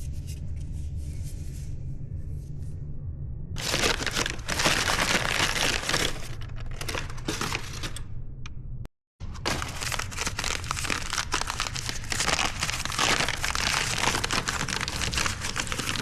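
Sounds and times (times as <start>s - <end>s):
steady low hum: 0.0s - 16.0s
packaging crumpling and tearing: 3.6s - 8.0s, 9.3s - 16.0s.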